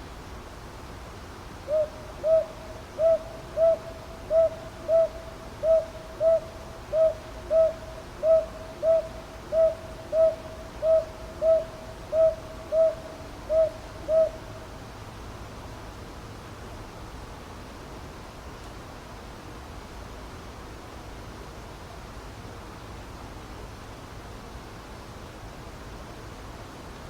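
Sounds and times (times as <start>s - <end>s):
faint steady hiss: 0.0s - 27.0s
owl hooting in pairs: 1.7s - 14.5s.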